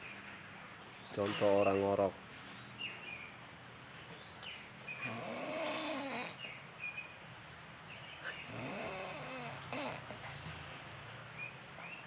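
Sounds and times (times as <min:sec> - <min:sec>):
person snoring: 0:05.1 - 0:06.4, 0:08.4 - 0:10.2.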